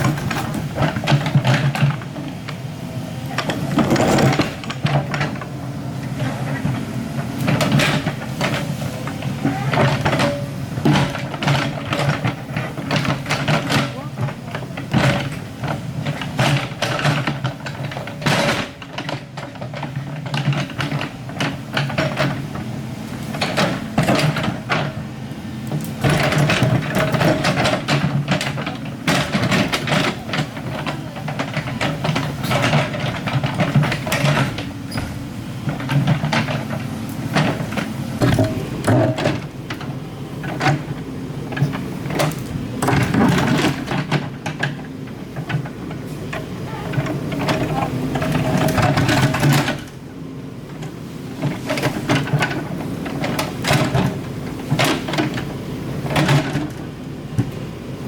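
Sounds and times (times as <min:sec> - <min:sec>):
excavator engine running: 0:00.0 - 0:58.0
metal knocks and clanks: 0:06.5 - 0:22.7, 0:25.7 - 0:50.0.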